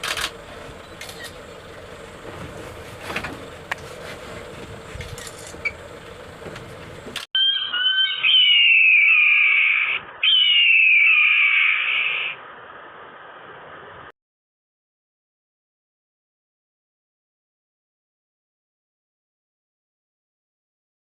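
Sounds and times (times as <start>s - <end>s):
scattered clicks: 0.0s - 0.4s
animal calling with falling pitch: 7.4s - 12.4s.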